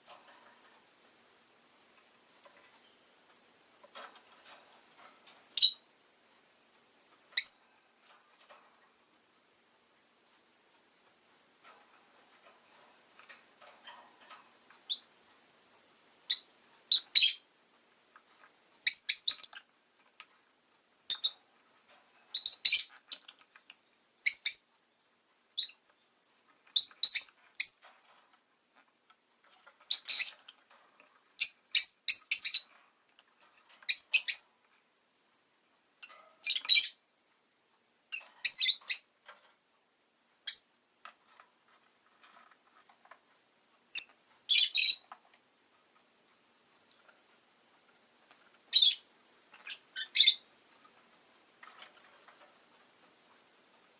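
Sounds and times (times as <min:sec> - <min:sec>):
lovebird high-pitched chirps: 0:05.5 - 0:05.8, 0:07.4 - 0:07.7, 0:14.9 - 0:15.1, 0:16.3 - 0:17.5, 0:18.8 - 0:19.7, 0:21.1 - 0:21.4, 0:22.3 - 0:23.3, 0:24.2 - 0:24.7, 0:25.5 - 0:25.8, 0:26.7 - 0:27.9, 0:29.9 - 0:30.5, 0:31.4 - 0:32.7, 0:33.8 - 0:34.6, 0:36.4 - 0:37.0, 0:38.1 - 0:39.2, 0:40.4 - 0:40.8, 0:43.9 - 0:45.1, 0:48.7 - 0:50.5.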